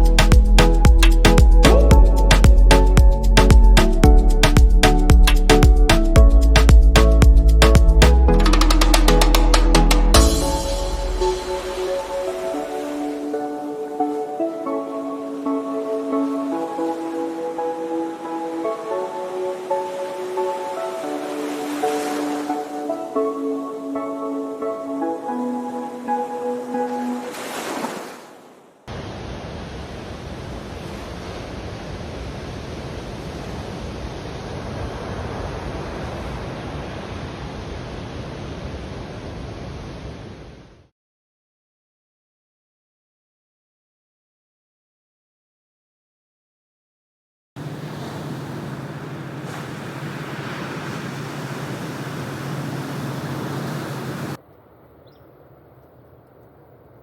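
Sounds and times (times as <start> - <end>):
surf rushing: 10.2 - 22.8, 26.8 - 37.3, 47.6 - 54.4
wind on microphone: 47.6 - 54.4.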